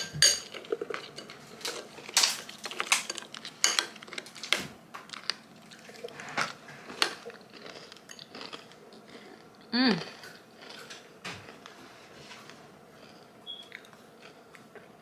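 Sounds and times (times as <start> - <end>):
cutlery clinking on a dish: 0.0 - 2.4.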